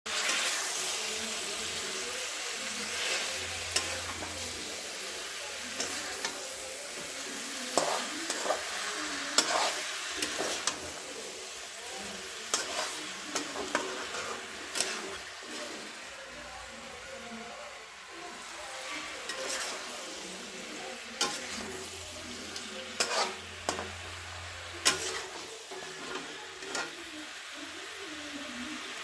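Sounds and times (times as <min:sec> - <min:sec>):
chicken sizzling in a pan: 0:00.1 - 0:29.0
utensil clicking and scraping pan: 0:12.5 - 0:15.7, 0:19.2 - 0:19.9, 0:21.2 - 0:21.8, 0:23.0 - 0:24.0, 0:24.8 - 0:26.9.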